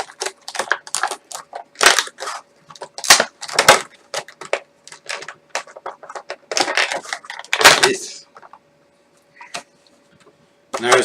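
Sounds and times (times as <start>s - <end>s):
packaging rustling and crinkling: 0.0s - 8.6s.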